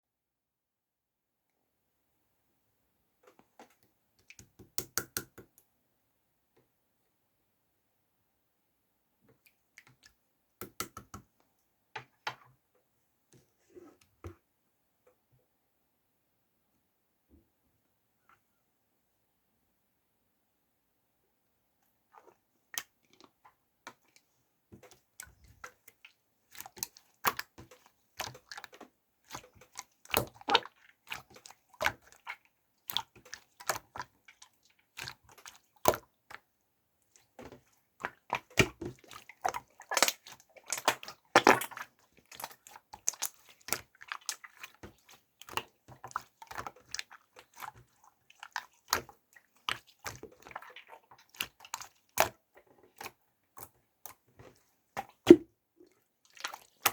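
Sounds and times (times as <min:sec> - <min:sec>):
wet squishing of soft material: 0:09.3 - 0:12.6, 0:21.8 - 0:56.9.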